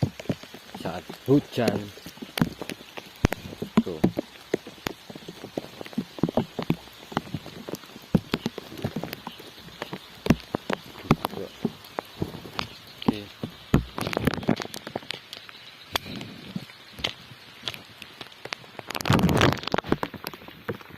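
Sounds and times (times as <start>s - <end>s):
rain hiss: 0.0s - 20.9s
raindrops tapping: 0.0s - 20.9s.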